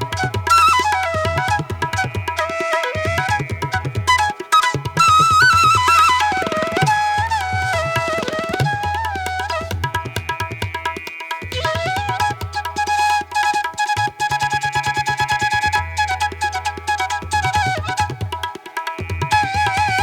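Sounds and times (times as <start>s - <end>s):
rapid tabla-like drum rhythm: 0.0s - 20.0s
sliding melody: 4.1s - 10.1s.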